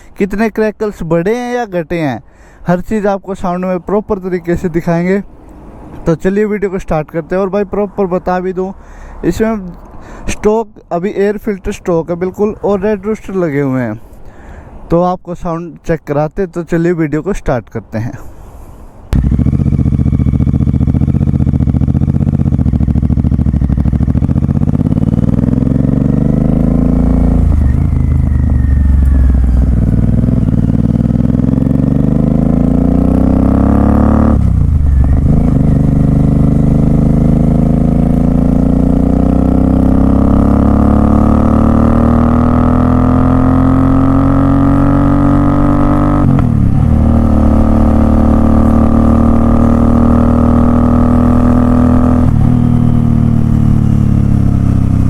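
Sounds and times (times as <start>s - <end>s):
motorcycle engine revving: 19.2s - 55.0s.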